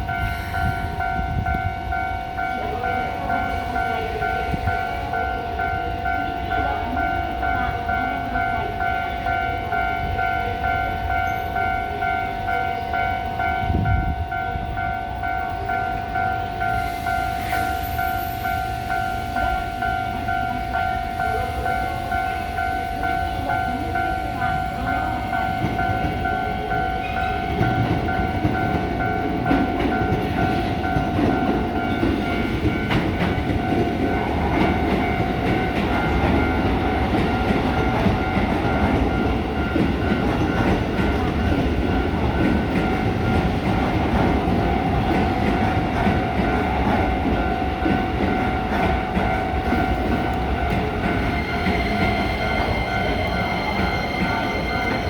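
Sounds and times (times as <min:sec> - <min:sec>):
level crossing bell ringing: 0:00.0 - 0:55.0
train wheels clattering: 0:16.0 - 0:55.0.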